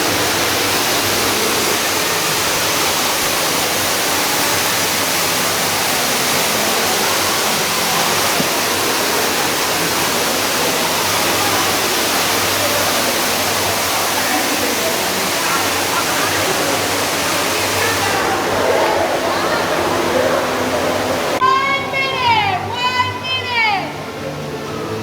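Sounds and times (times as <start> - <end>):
waterfall pouring: 0.0 - 21.4.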